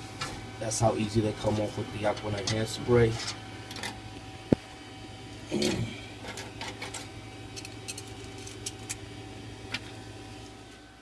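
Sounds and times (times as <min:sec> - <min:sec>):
electrical hum of printer: 0:00.0 - 0:11.0.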